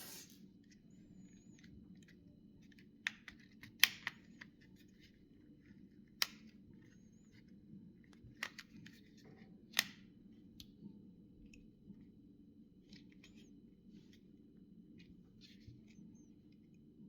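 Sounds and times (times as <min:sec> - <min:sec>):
plastic phone parts clicking: 0:03.1 - 0:04.6, 0:08.1 - 0:09.0.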